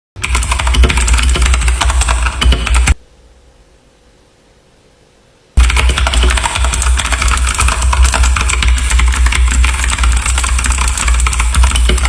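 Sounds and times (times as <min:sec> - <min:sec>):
mechanical keyboard typing: 0:00.2 - 0:03.0, 0:05.6 - 0:12.0.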